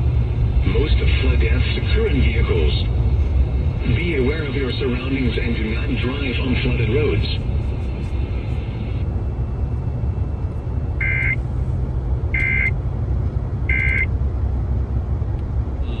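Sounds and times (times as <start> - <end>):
steady low hum: 0.0 - 16.0
shrill warbling bleeps: 11.0 - 11.4, 13.7 - 14.1.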